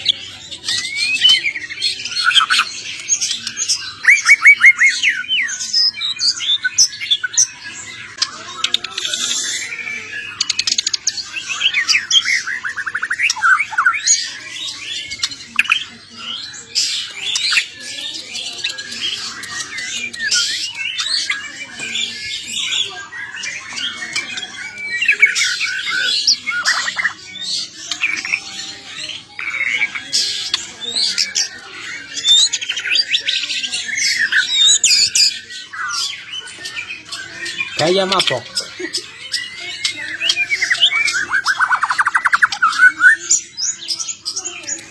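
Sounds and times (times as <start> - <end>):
songbird singing: 0.0 - 44.9.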